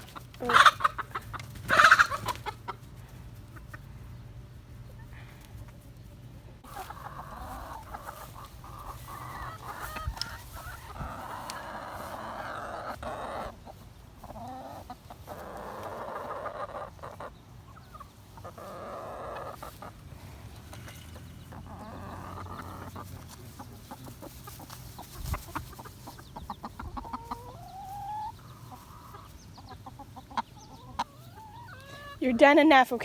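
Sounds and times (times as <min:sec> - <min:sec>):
chickens clucking: 0:00.0 - 0:33.0.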